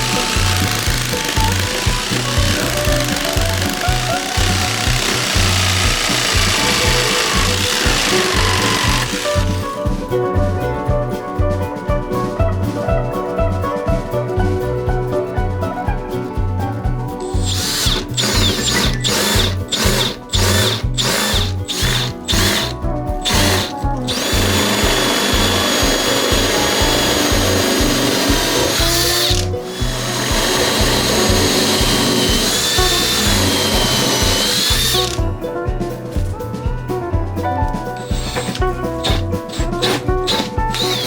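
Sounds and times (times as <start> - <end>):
power tool cutting wood: 0.0 - 9.8, 17.3 - 35.2, 38.0 - 41.0
background music with beat: 0.0 - 41.0.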